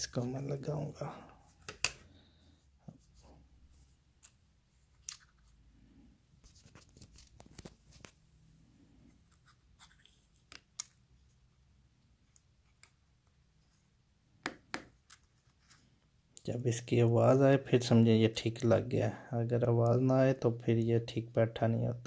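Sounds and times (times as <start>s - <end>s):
phone parts clicking and tapping: 1.6s - 2.0s.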